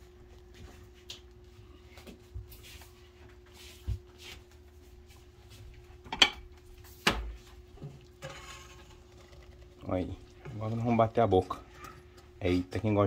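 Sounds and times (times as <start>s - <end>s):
dishes and cutlery clinking: 6.1s - 6.5s
dishes clattering: 6.1s - 6.5s.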